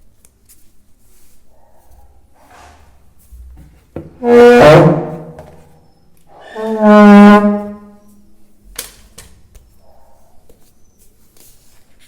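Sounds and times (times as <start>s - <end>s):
furniture feet dragging on floor: 2.4s - 5.8s.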